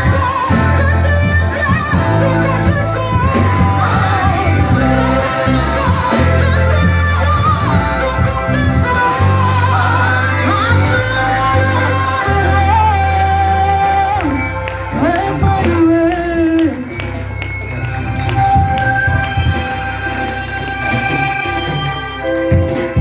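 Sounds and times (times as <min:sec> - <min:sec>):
voices singing: 0:00.0 - 0:16.6
band with heavy bass line: 0:00.0 - 0:23.0.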